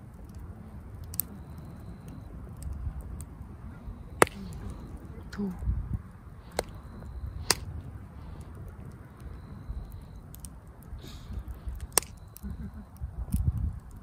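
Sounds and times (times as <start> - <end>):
wood fire crackling: 0.0 - 14.0
wood cracking sharply: 4.2 - 4.9, 7.4 - 7.7, 11.5 - 12.4.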